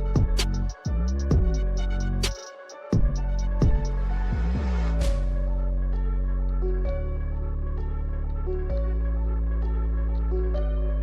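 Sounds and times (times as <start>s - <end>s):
drum hits: 0.0s - 1.6s, 3.0s - 4.0s
low bass: 0.0s - 2.3s, 3.0s - 11.0s.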